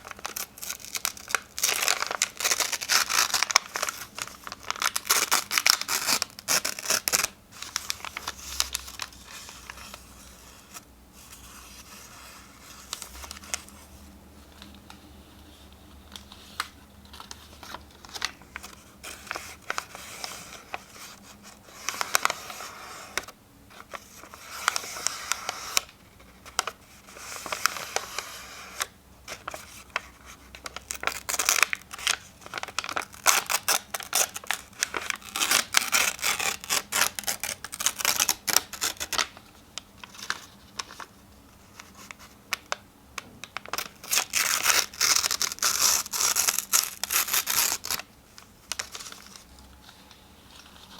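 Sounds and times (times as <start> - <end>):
paper being torn: 44.0 - 48.0.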